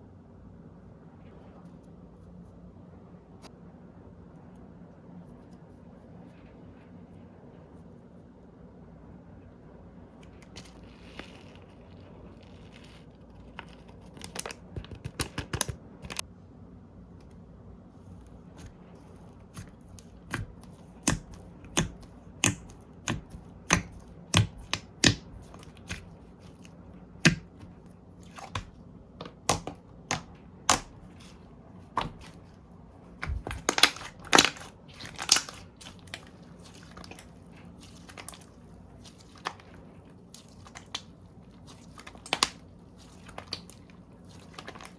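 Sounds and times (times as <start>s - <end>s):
slime clicks and pops: 29.4s - 31.3s, 33.2s - 36.1s.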